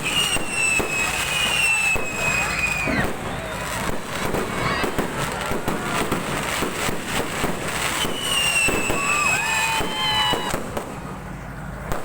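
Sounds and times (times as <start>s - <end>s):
long falling whistle: 0.0s - 3.8s, 7.9s - 10.6s
fireworks bangs and crackles: 0.0s - 12.0s.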